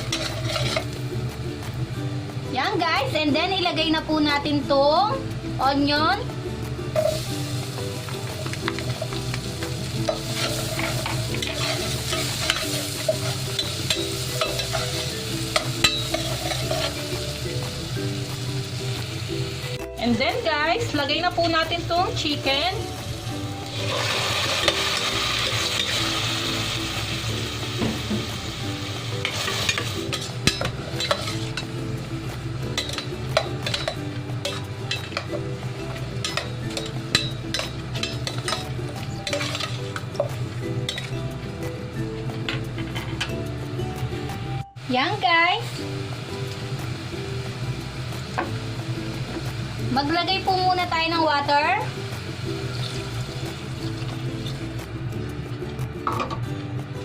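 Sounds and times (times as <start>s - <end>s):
utensil scraping a pan: 0.0s - 1.0s, 10.0s - 17.0s, 29.2s - 31.7s, 36.2s - 40.0s
onion sizzling in a pan: 0.0s - 55.5s.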